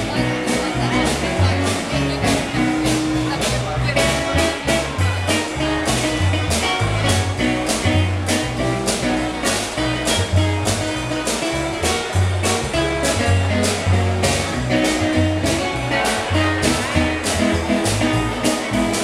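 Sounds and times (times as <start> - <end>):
upbeat music with drums bass and guitar: 0.0 - 19.0.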